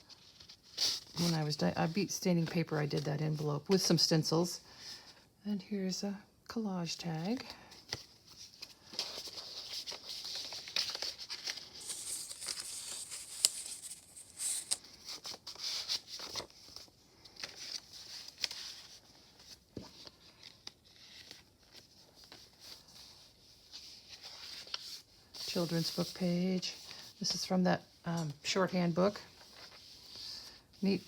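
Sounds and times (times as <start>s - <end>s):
paper rustling and crinkling: 7.4s - 27.5s, 28.4s - 31.0s.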